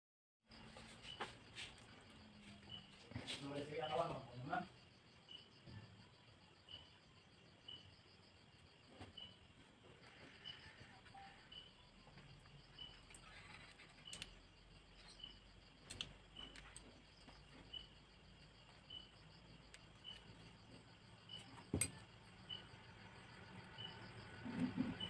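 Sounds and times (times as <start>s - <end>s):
cricket chirping faintly: 0.5s - 25.0s.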